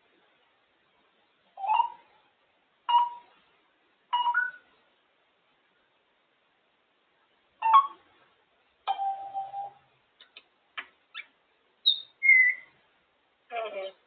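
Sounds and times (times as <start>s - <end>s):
parrot calls and whistles: 4.2s - 4.6s, 7.6s - 8.0s, 11.1s - 12.7s.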